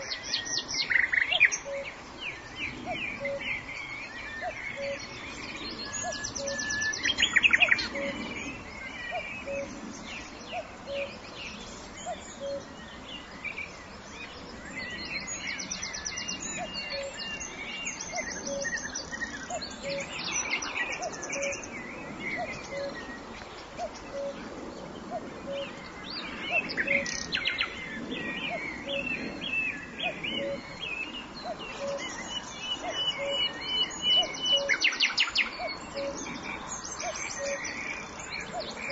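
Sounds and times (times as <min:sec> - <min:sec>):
songbirds chirping and trilling: 0:00.0 - 0:38.9.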